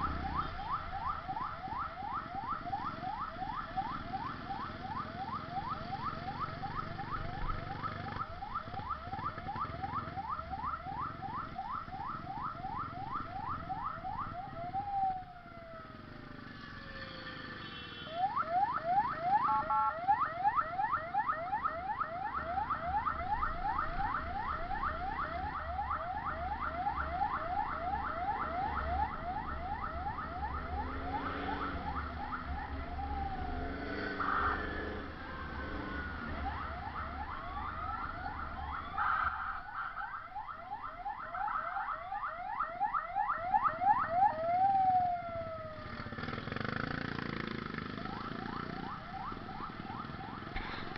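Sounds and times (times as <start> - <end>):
ambulance siren yelping: 0.0 - 50.9.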